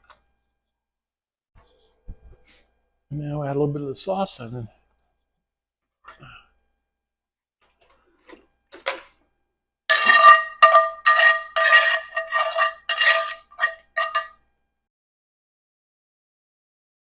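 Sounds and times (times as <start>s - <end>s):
metal utensil scraping a pan: 9.9s - 14.3s.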